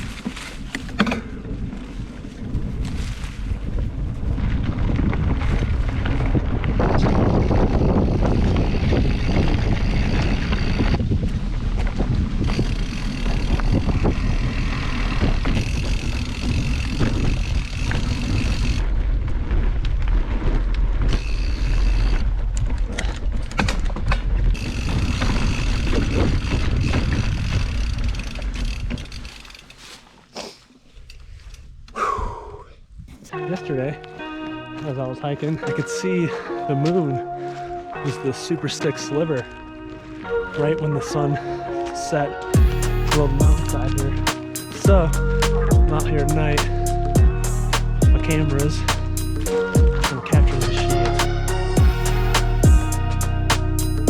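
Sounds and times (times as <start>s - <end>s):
wind buffeting microphone: 0.0s - 29.1s
mountain bike riding on dirt: 0.0s - 31.8s, 33.3s - 54.0s
low rumble: 42.6s - 54.0s.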